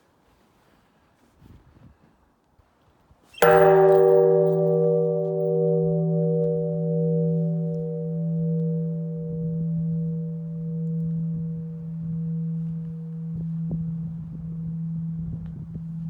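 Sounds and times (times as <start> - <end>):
metal bell strike ringing: 3.4 - 16.0.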